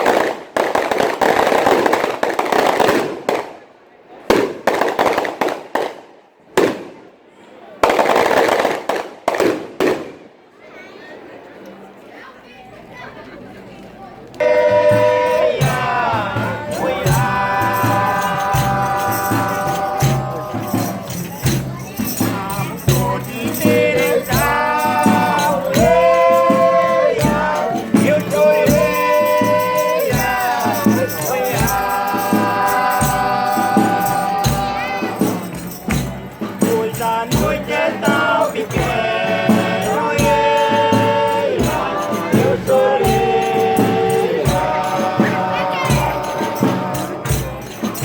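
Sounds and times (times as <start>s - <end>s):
group chanting: 14.4s - 48.0s
hand percussion: 14.4s - 48.0s.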